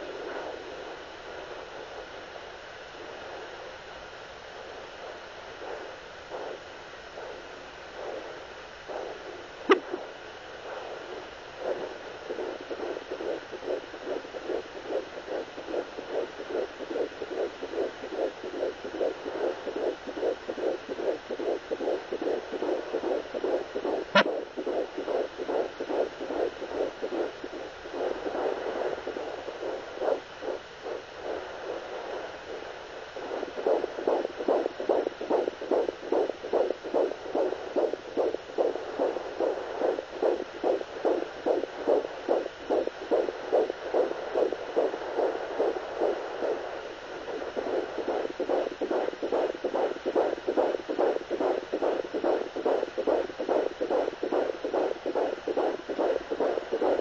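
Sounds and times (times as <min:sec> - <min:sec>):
fetal heartbeat on doppler monitor: 0:00.0 - 0:57.0.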